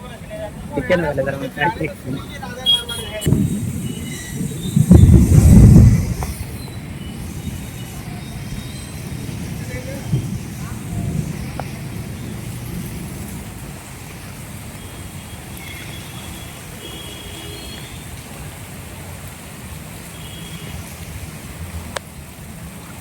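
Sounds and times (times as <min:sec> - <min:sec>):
heavy rain and running water: 0:00.0 - 0:23.0
low rumble: 0:03.3 - 0:06.6.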